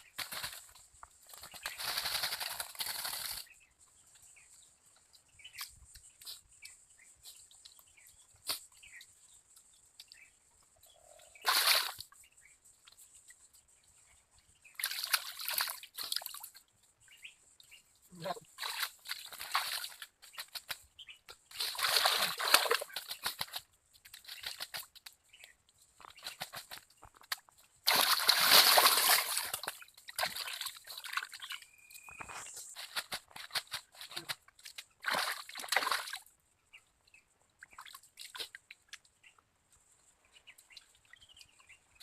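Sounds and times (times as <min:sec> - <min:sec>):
water splashing: 0:11.4 - 0:12.0, 0:18.2 - 0:20.8, 0:21.5 - 0:23.6, 0:27.8 - 0:31.6, 0:32.4 - 0:36.3.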